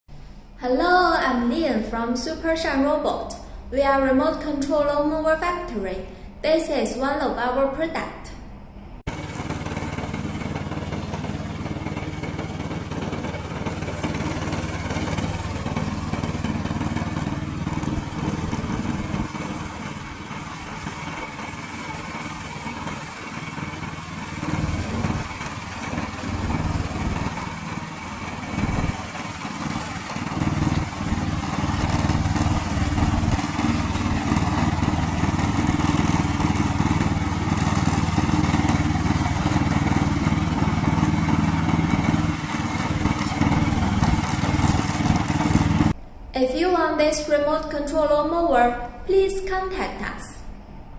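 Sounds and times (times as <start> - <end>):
remote-control mower engine drone: 9.1 - 46.0.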